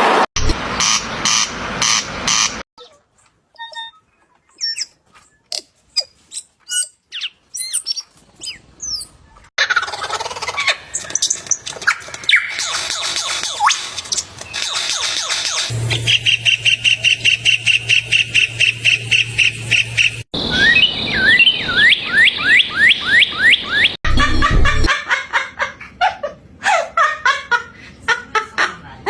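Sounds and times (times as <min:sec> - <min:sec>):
birds calling: 0:00.8 - 0:24.0.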